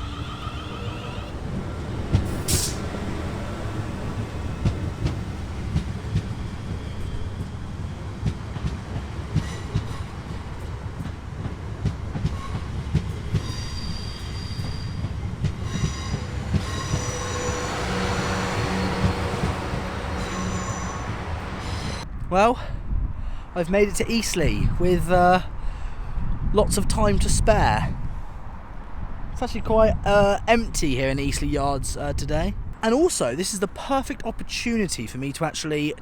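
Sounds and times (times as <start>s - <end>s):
wheels and brakes squealing: 0.0s - 5.4s, 6.3s - 8.2s, 12.3s - 22.0s
train rumbling on rails: 0.0s - 36.0s.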